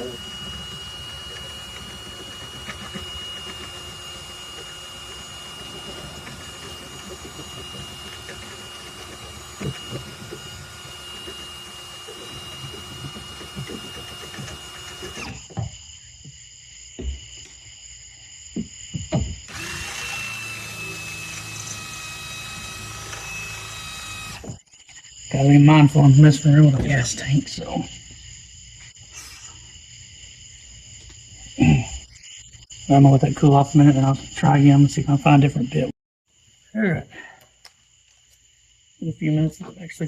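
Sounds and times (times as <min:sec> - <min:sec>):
power drill whining: 0:00.0 - 0:15.6, 0:19.5 - 0:24.6.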